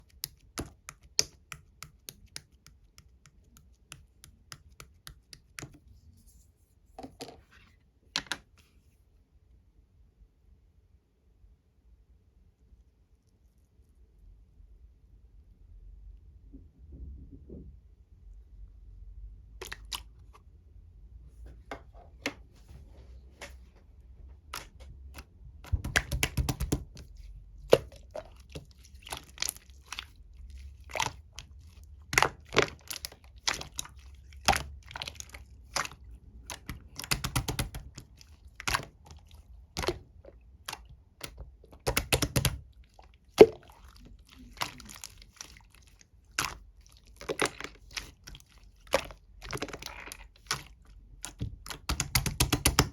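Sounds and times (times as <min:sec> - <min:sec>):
slime squished by hand: 0:19.6 - 0:20.4, 0:24.4 - 0:52.9
slime popping and clicking: 0:40.7 - 0:42.6, 0:48.9 - 0:52.9.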